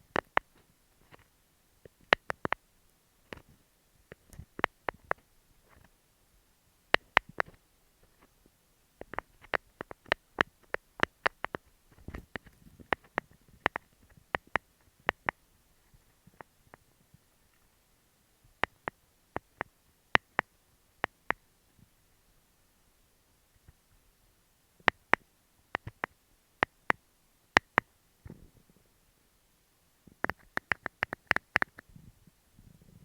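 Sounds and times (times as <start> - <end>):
fingernails tapping on microphone: 25.8 - 26.8.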